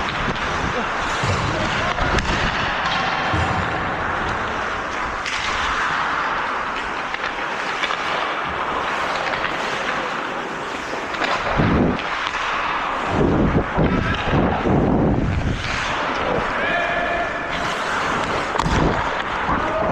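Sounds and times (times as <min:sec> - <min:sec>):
hockey sticks and puck clicks: 0:00.0 - 0:19.9
skates scraping ice: 0:00.0 - 0:19.9
wind buffeting microphone: 0:13.0 - 0:15.6.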